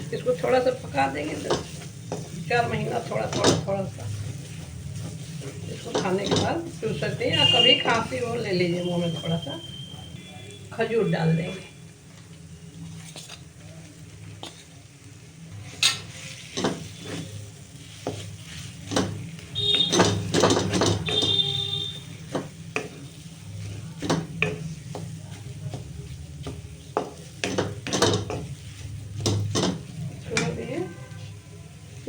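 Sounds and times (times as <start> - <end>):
spoon scraping a pan: 0.2 - 6.8, 15.6 - 31.4.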